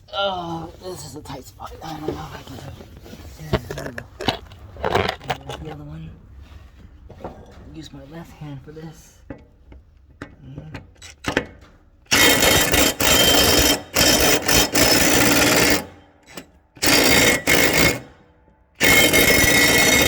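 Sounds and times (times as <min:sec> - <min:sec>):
impact driver hammering on bolt: 0:12.1 - 0:18.2, 0:18.8 - 0:20.0.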